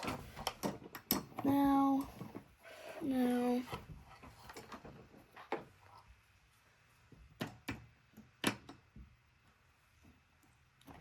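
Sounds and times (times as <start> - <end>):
computer parts clicking and knocking: 0.0 - 1.6, 7.4 - 8.9.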